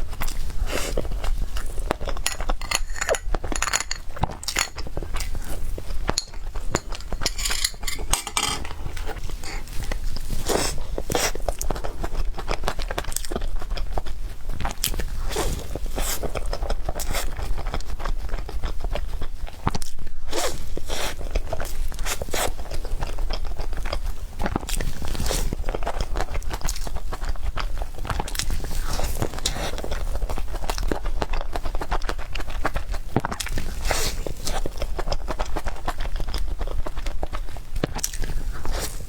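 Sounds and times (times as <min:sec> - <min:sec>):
person chewing cake: 0:00.0 - 0:39.0.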